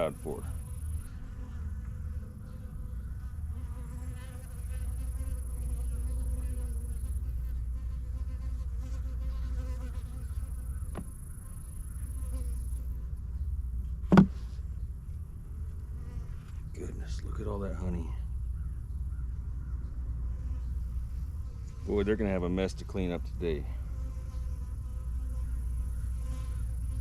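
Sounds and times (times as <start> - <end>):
honey bees buzzing: 0.0 - 14.4, 19.4 - 27.0
sharp knock: 14.1 - 14.4.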